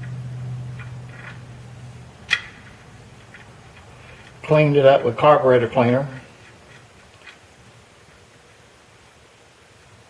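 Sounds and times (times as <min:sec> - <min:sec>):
faint background hiss: 0:00.0 - 0:10.0
person speaking: 0:04.4 - 0:06.4.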